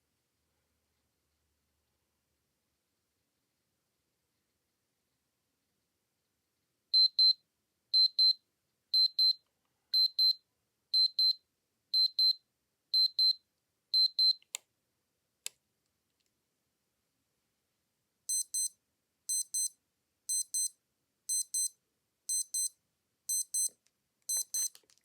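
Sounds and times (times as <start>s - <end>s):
high-pitched double beep: 18.3s - 18.7s, 19.3s - 19.7s, 20.3s - 20.7s, 21.3s - 21.7s, 22.3s - 22.7s, 23.3s - 23.7s, 24.3s - 24.7s.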